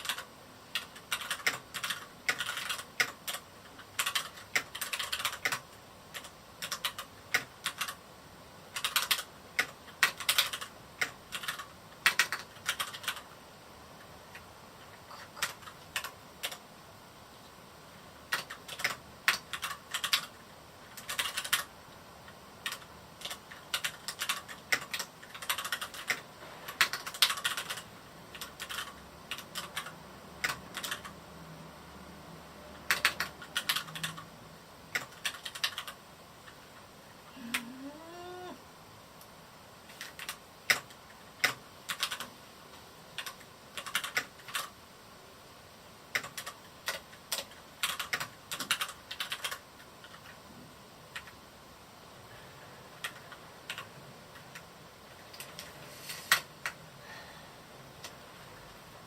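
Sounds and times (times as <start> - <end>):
mechanical keyboard typing: 0.0 - 8.0, 8.7 - 13.4, 14.0 - 16.6, 18.3 - 31.2, 32.8 - 34.3, 34.9 - 37.7, 39.9 - 42.3, 43.2 - 44.8, 46.1 - 50.4, 51.1 - 51.4, 52.9 - 56.8.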